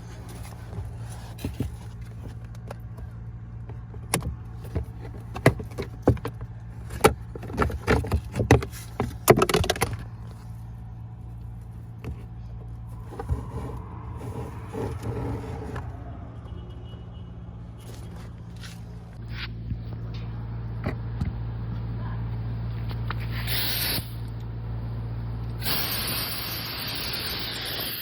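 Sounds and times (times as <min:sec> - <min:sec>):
steady low hum: 0:00.0 - 0:27.0
plastic glovebox clicks and knocks: 0:04.0 - 0:10.1.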